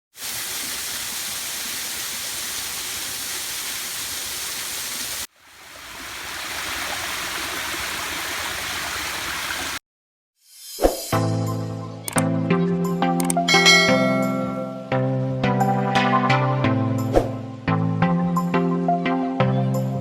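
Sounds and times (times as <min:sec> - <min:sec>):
waterfall rushing: 0:00.1 - 0:09.8.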